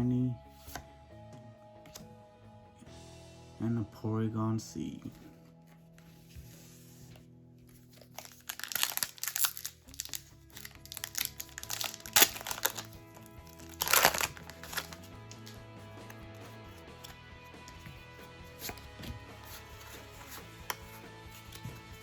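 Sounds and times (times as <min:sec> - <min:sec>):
background music: 0:00.0 - 0:22.0
foil wrapper crinkling: 0:07.7 - 0:15.6.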